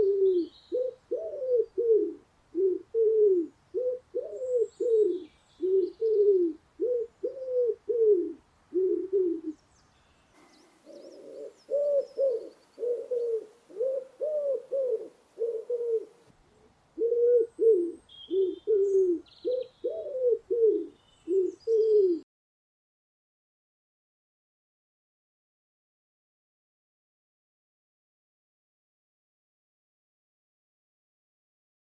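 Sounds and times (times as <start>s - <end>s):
dove cooing: 0.0s - 9.6s, 10.4s - 22.2s.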